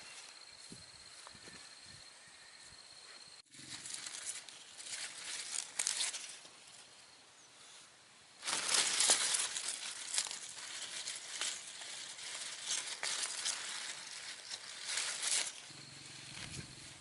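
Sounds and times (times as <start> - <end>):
rustling and crinkling: 3.5 - 6.9, 8.4 - 17.0
sharp crackles: 3.6 - 6.4, 8.4 - 17.0.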